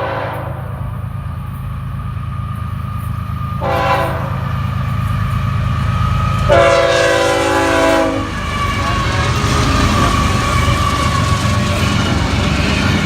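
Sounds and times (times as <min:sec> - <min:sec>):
locomotive air horn: 0:00.0 - 0:00.8, 0:03.6 - 0:04.5, 0:06.4 - 0:12.2
diesel train rumbling: 0:00.0 - 0:13.0.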